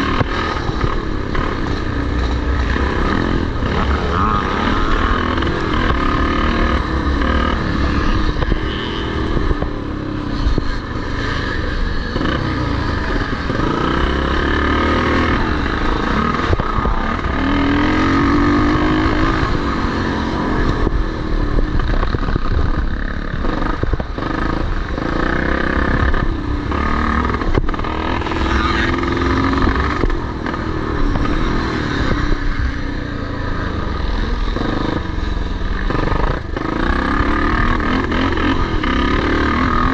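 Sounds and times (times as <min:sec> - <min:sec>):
motocross motorcycles revving: 0:00.0 - 0:39.9.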